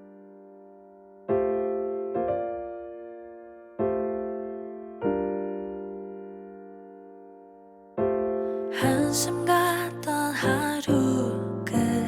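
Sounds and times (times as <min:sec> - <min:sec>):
slow piano chords: 0:00.0 - 0:12.0.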